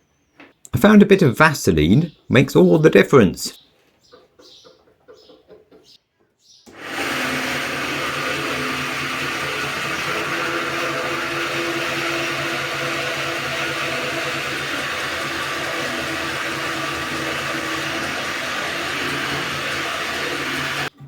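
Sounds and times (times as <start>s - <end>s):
drilling rig whirring: 6.7s - 21.0s.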